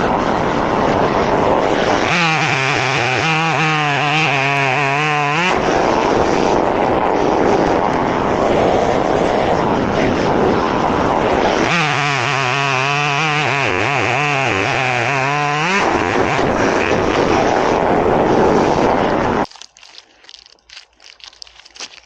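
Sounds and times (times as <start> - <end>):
chainsaw cutting wood: 0.0 - 19.5
chainsaw engine running: 0.0 - 19.5.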